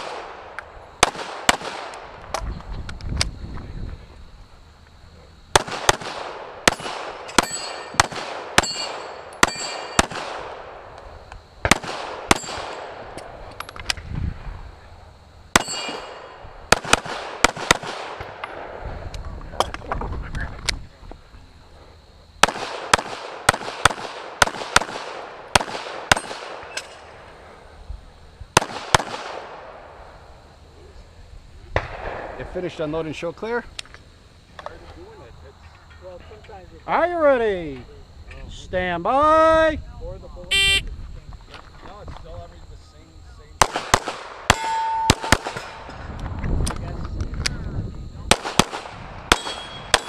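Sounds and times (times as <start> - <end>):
pistol shots echoing: 0.0 - 2.1, 5.5 - 10.8, 11.6 - 13.2, 15.6 - 18.8, 22.4 - 27.0, 28.6 - 29.9, 43.6 - 45.9, 48.3 - 50.0.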